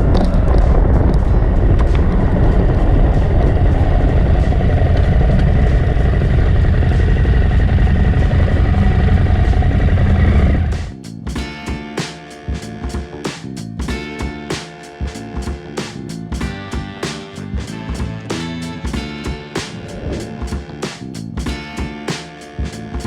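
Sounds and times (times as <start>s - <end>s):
loud wind rushing noise: 0.0s - 11.0s, 19.4s - 20.8s
motorcycle engine running: 0.0s - 23.0s.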